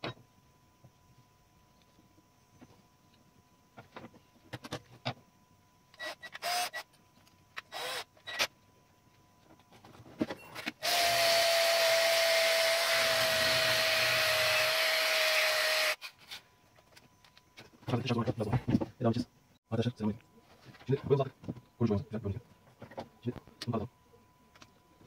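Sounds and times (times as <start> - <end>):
electric power tool whining: 10.8 - 16.1.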